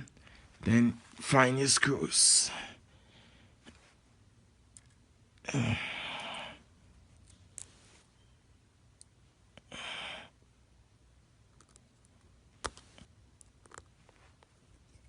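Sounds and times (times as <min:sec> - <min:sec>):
breathy exhale: 0:09.7 - 0:10.4.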